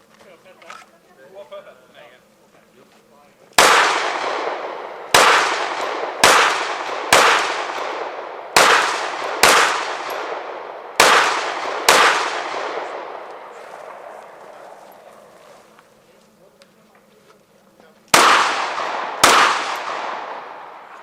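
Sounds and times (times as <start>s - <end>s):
pistol shots with echo: 3.6s - 14.1s, 18.1s - 21.0s.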